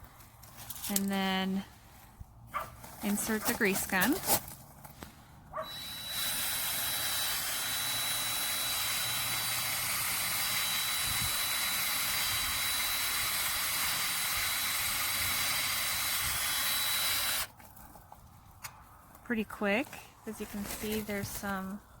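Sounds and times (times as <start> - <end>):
electric drill whining: 5.6 - 17.5.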